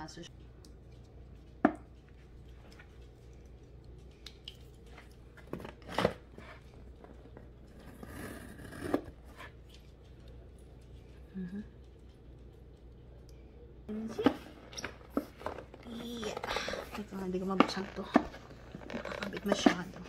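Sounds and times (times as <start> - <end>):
cardboard and plastic crinkling: 14.2 - 20.0.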